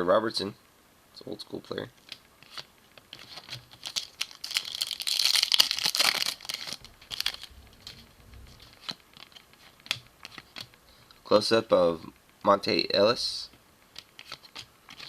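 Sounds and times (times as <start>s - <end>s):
plastic wrapper crinkling and tearing: 2.0s - 10.8s.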